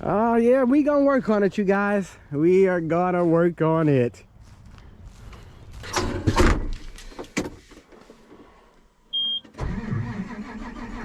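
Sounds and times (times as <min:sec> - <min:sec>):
sharp clunk: 0:05.8 - 0:07.6.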